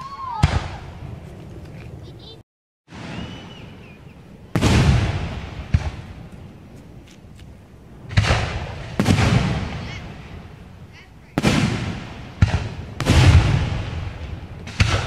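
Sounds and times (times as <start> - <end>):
fireworks shells booming: 2.9 - 3.9, 4.5 - 15.0.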